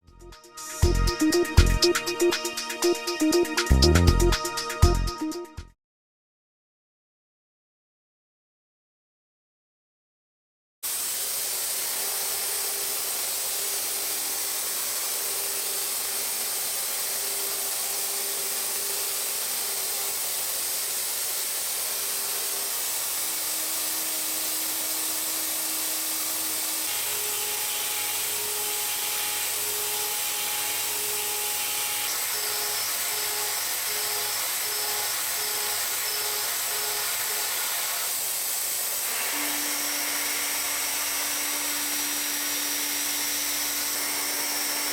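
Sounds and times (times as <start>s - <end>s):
steady high hiss: 10.9s - 36.4s.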